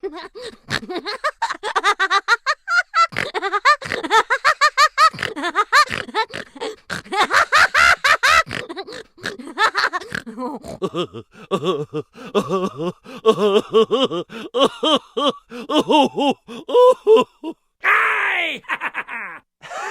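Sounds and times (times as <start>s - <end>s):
high-pitched laughing: 17.8s - 19.9s
lower-voiced laugh: 18.3s - 19.9s.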